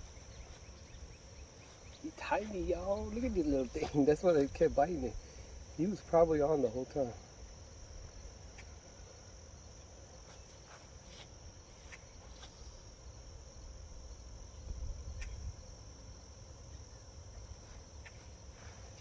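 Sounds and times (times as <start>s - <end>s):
insects chirping: 0.0s - 19.0s
wind rumble on microphone: 14.6s - 15.6s.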